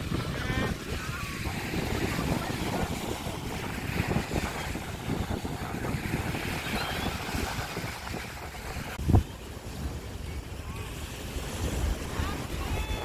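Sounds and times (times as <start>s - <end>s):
surf rushing: 0.0s - 13.0s
wind buffeting the microphone: 0.0s - 13.0s.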